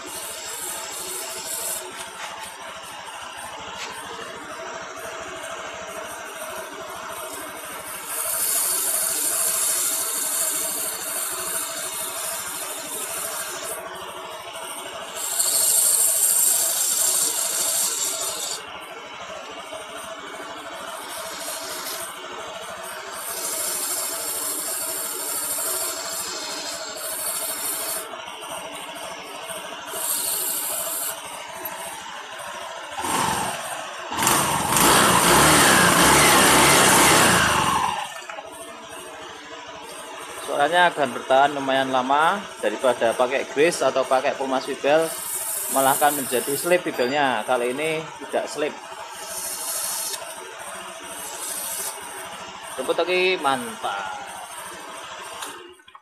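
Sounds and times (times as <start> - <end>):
sandpaper scratching: 0.0 - 2.5, 8.0 - 13.8, 15.2 - 18.6, 21.1 - 22.1, 23.2 - 28.1, 29.9 - 31.2, 45.0 - 47.1, 49.2 - 50.2, 51.1 - 52.0
scooter engine revving: 0.0 - 55.9.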